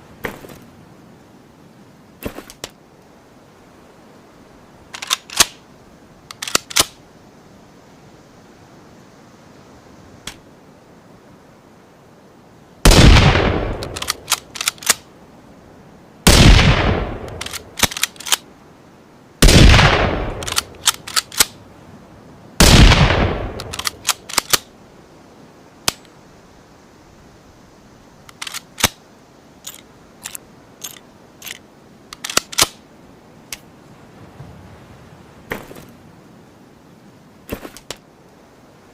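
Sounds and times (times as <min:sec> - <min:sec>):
rifle bolt clicking: 0:05.0 - 0:05.6, 0:06.3 - 0:07.0, 0:13.8 - 0:15.0, 0:17.3 - 0:18.4, 0:20.4 - 0:21.6, 0:23.6 - 0:24.7, 0:28.3 - 0:29.0, 0:32.2 - 0:32.8
rifle shots: 0:12.9 - 0:14.4, 0:16.3 - 0:18.2, 0:19.4 - 0:21.5, 0:22.6 - 0:24.6.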